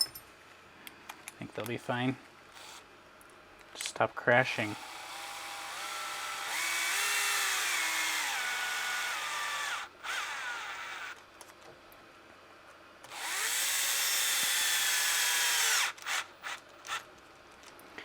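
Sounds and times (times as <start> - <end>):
electric screwdriver motor whine: 4.9 - 11.2, 13.1 - 17.0.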